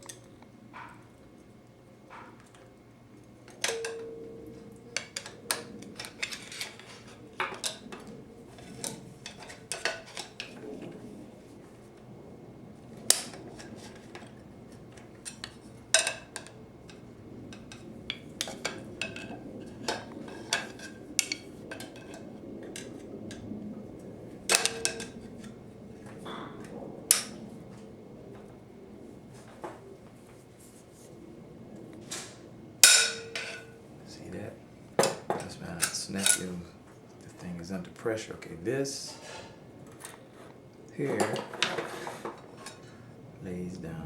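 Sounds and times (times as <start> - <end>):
metal parts and tools clinking: 3.5 - 7.9, 32.8 - 33.7, 35.1 - 36.6
loud ringing metal strikes: 3.6 - 6.6, 32.8 - 33.7.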